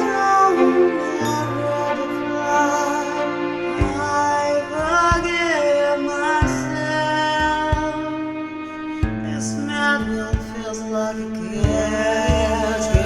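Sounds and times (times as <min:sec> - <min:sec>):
pop song with singing: 0:00.0 - 0:13.0
slow drum beat: 0:07.4 - 0:08.2, 0:11.6 - 0:13.0.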